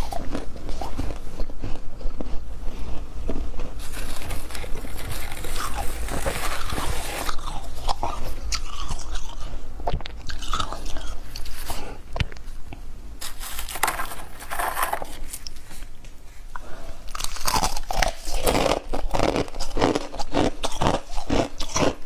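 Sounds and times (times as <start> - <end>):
person crunching frost: 0.0 - 9.4, 13.2 - 15.9, 17.1 - 22.0.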